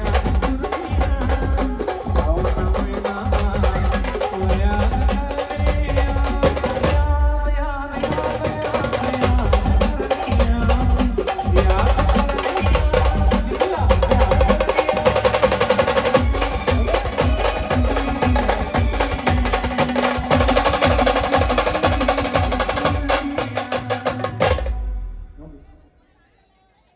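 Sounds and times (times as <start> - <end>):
fast dense drumming: 0.0 - 25.1.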